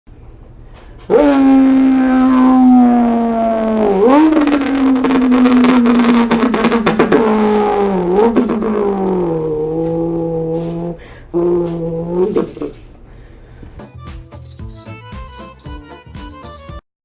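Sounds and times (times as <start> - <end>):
person imitating car engine: 1.1 - 12.8.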